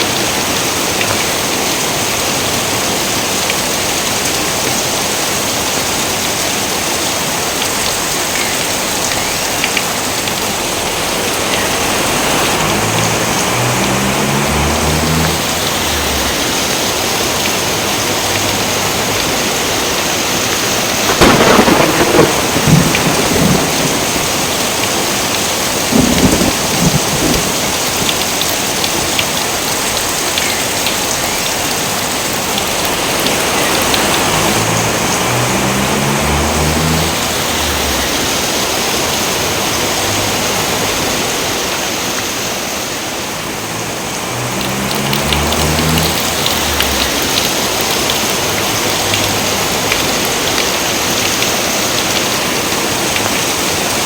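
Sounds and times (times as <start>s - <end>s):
heavy rain: 0.0s - 54.0s
thunder rumbling: 20.5s - 29.1s, 32.6s - 41.2s, 44.3s - 51.3s.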